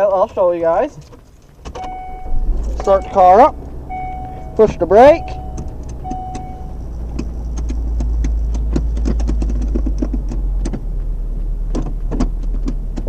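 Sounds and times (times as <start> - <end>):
car engine idling: 0.5 - 13.0
shift lever clicks and knocks: 5.6 - 10.8.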